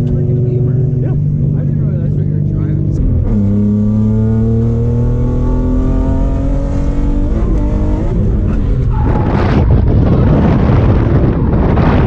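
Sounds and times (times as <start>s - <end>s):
loud rushing noise: 6.6s - 12.0s.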